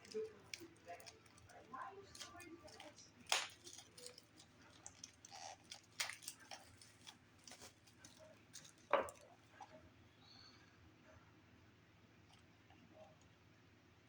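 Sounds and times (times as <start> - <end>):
plastic card wrapper crinkling: 0.0 - 9.1.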